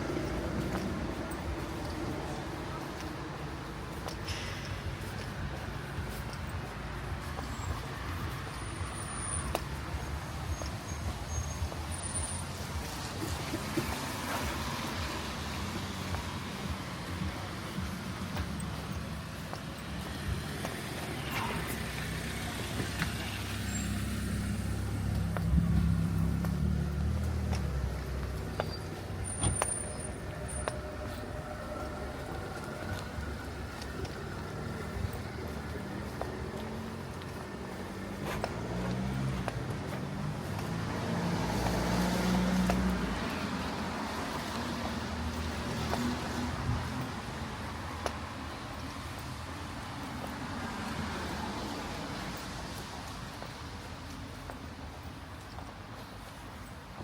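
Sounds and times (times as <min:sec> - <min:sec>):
traffic engine rumble: 0:00.0 - 0:57.0
rain hiss on wet road: 0:20.1 - 0:25.1.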